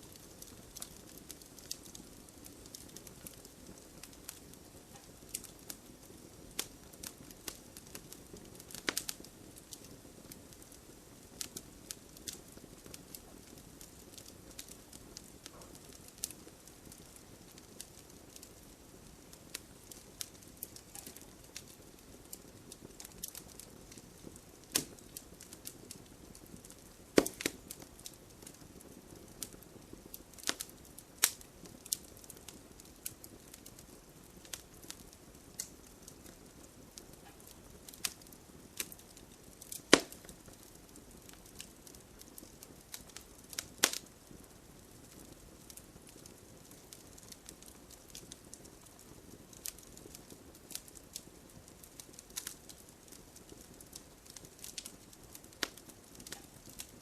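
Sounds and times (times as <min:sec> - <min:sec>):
soft steady hiss: 0:00.0 - 0:57.0
wood fire crackling: 0:00.0 - 0:57.0
loud sharp pops: 0:27.2 - 0:27.7, 0:39.9 - 0:40.3.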